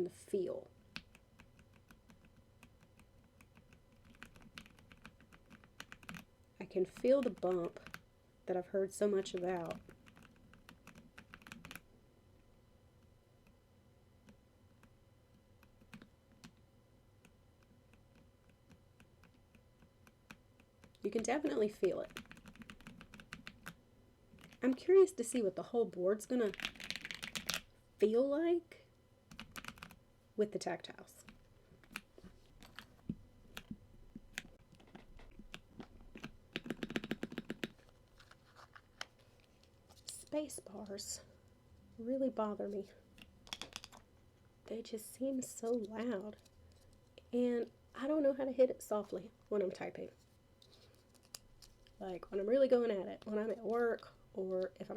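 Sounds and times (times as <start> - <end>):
mechanical keyboard keystrokes: 26.4 - 27.7, 29.3 - 30.0, 35.3 - 37.8.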